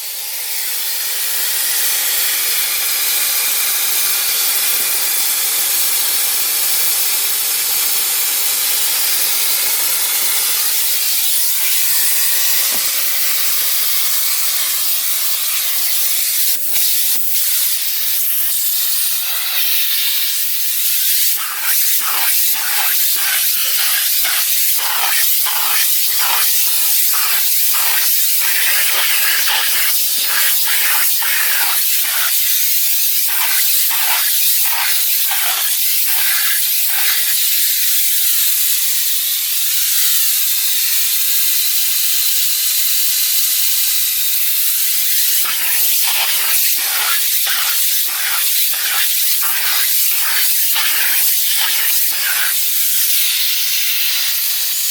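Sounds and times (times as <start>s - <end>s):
vacuum cleaner running: 16.5s - 37.4s, 45.2s - 54.3s.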